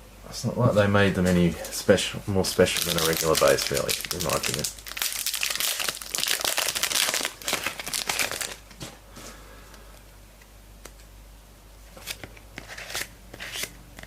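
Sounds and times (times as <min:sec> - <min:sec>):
foil wrapper tearing and crinkling: 0:02.6 - 0:08.8.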